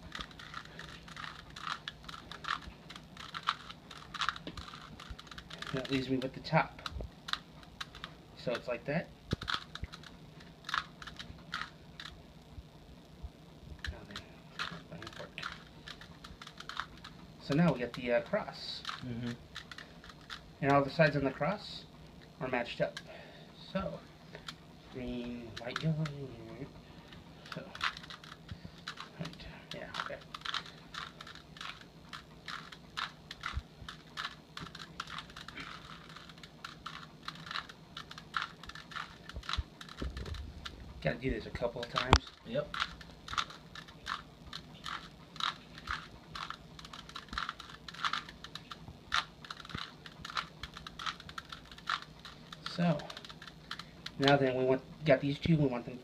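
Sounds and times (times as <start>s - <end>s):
plastic puzzle cube twisting clicks: 0.1s - 5.9s, 9.3s - 12.2s, 14.6s - 18.0s, 18.8s - 19.0s, 19.6s - 20.4s, 27.5s - 29.4s, 30.0s - 40.8s, 41.9s - 54.4s.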